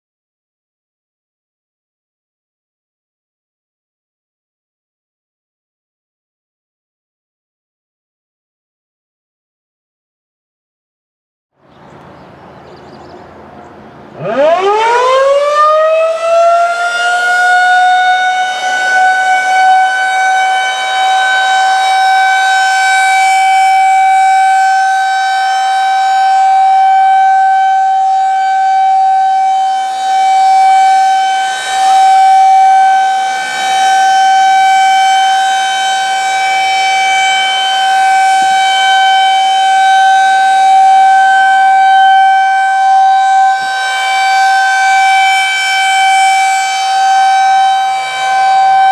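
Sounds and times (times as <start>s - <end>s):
warning siren wailing: 11.9s - 48.9s.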